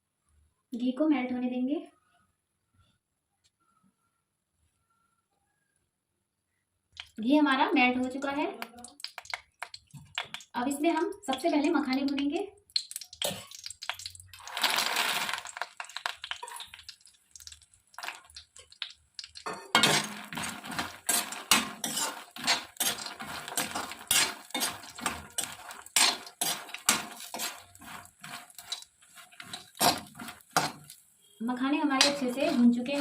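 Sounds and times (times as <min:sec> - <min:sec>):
spatula scraping and clinking a pan: 0:19.3 - 0:31.0, 0:31.6 - 0:33.0.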